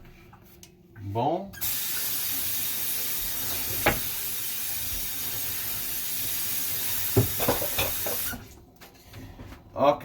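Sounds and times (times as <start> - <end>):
pot hissing on stove: 1.6 - 8.4.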